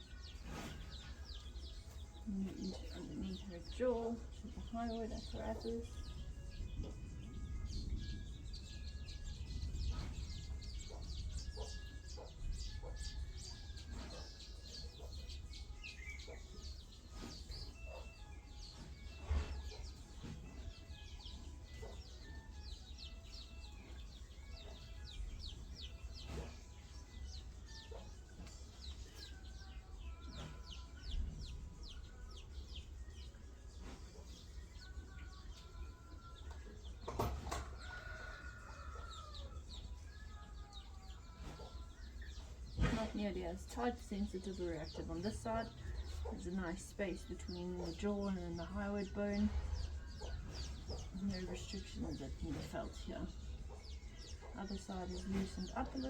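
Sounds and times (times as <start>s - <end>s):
small birds chirping: 0.0s - 56.0s
chickens clucking: 9.7s - 26.8s, 36.6s - 39.9s, 41.2s - 56.0s.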